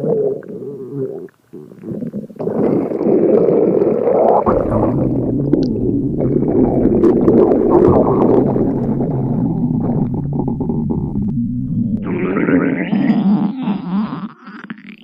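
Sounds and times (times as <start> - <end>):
stomach growling: 0.0 - 15.0
low drone: 4.5 - 12.9.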